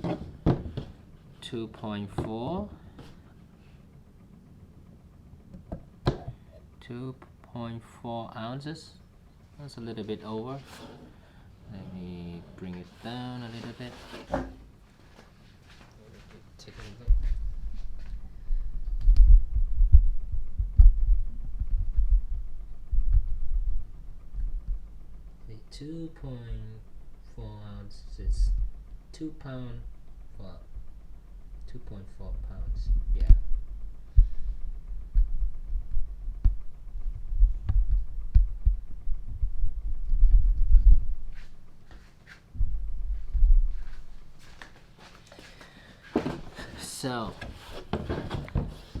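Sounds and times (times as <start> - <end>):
handling thumps and rumbling: 0.0 - 1.1, 16.9 - 25.5, 29.9 - 41.3, 42.5 - 44.4.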